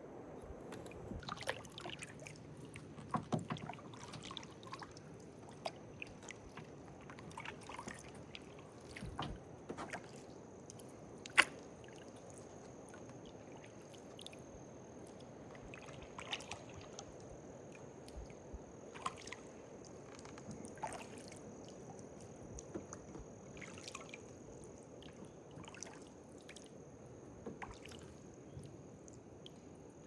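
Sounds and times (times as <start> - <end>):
paddle dipping and sloshing water: 0.0 - 30.0.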